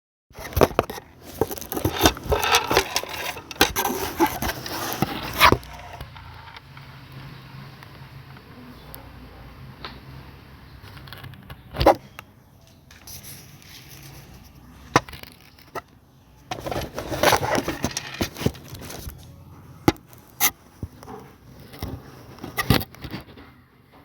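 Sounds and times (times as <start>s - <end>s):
scraping and crumbling: 0.4s - 6.7s, 12.9s - 19.3s.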